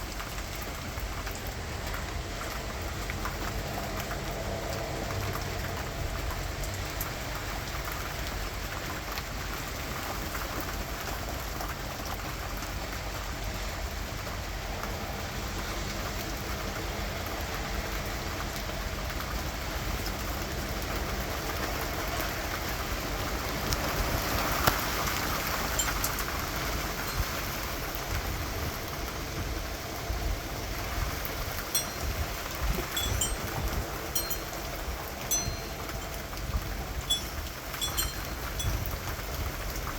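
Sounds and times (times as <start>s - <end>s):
steady rain falling: 0.0s - 39.9s
sharp drips: 25.2s - 27.6s, 31.8s - 39.2s.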